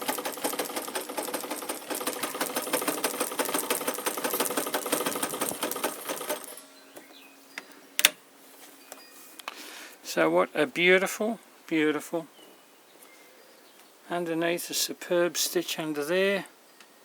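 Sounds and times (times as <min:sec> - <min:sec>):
sewing machine clatter: 0:00.0 - 0:06.6.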